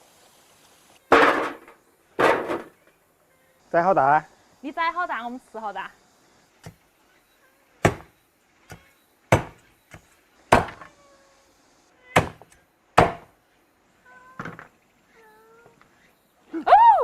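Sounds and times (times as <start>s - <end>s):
cleaver chopping on board: 7.8s - 8.1s, 9.3s - 9.6s, 10.5s - 10.8s, 12.2s - 12.4s, 13.0s - 13.3s.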